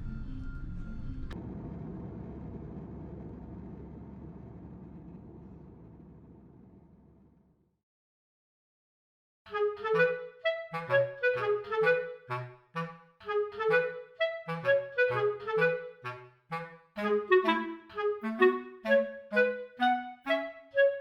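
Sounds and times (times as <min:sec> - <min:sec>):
quick melody over bass line: 0:09.5 - 0:20.7.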